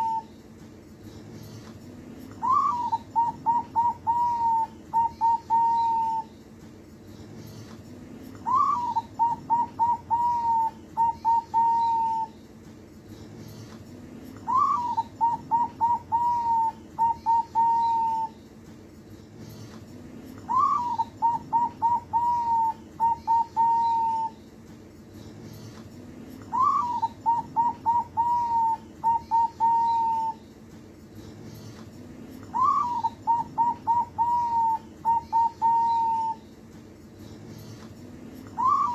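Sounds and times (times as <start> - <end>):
dove cooing: 0.0 - 0.3, 2.4 - 6.3, 8.4 - 12.4, 14.4 - 18.4, 20.5 - 24.4, 26.5 - 30.4, 32.4 - 36.4, 38.5 - 38.9.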